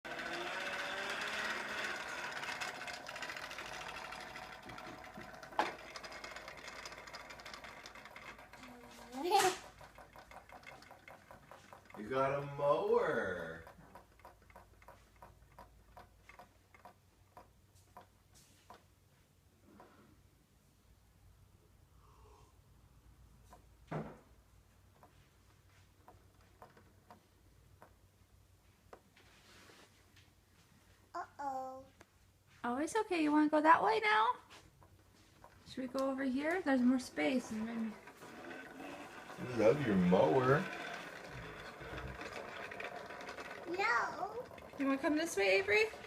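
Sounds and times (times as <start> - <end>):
toy lawnmower clatter: 0.0 - 17.5, 33.8 - 46.0.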